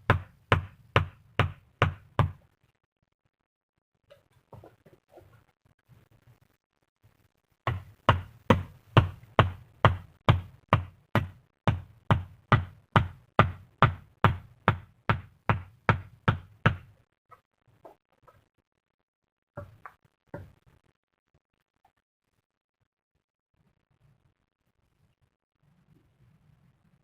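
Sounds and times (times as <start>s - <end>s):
rapid hard knocks: 0.0s - 2.4s, 7.7s - 17.0s.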